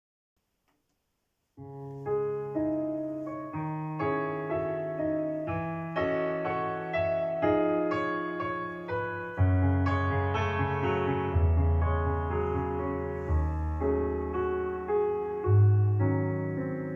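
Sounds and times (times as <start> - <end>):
slow piano chords: 1.6 - 16.9
deep piano bass note: 9.4 - 16.9.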